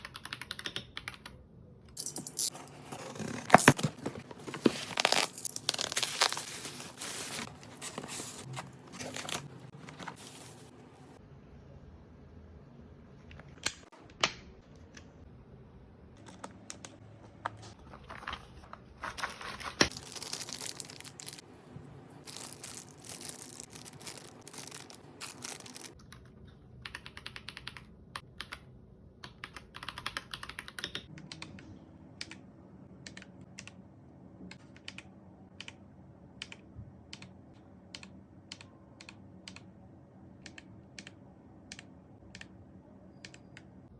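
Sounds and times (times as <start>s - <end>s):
mechanical keyboard typing: 0.0s - 1.4s, 25.9s - 31.6s.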